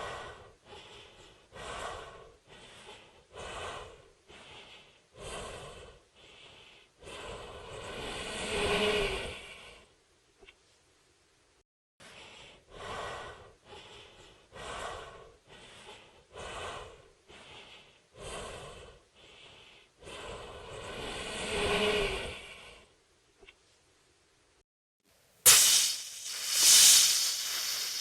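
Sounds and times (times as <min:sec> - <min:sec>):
raspy monster breathing: 0:00.0 - 0:09.9, 0:12.2 - 0:22.9, 0:26.3 - 0:28.0.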